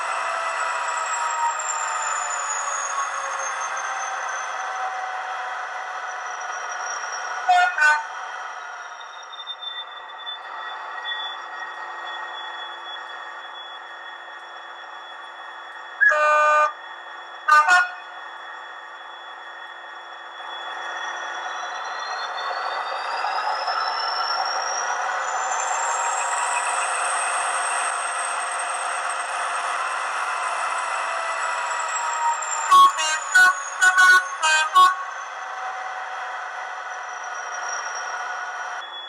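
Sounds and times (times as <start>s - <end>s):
horn toots: 16.0s - 16.8s, 32.7s - 35.1s.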